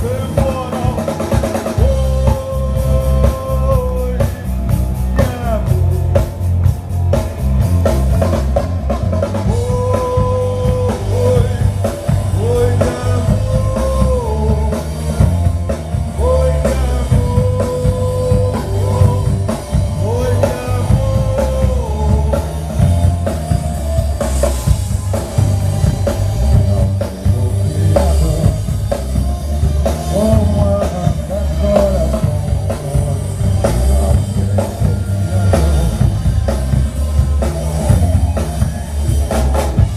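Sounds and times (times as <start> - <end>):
drum kit: 0.0 - 39.9
guitar: 0.0 - 39.9
heavy bass: 0.0 - 39.9
person singing: 0.0 - 39.9.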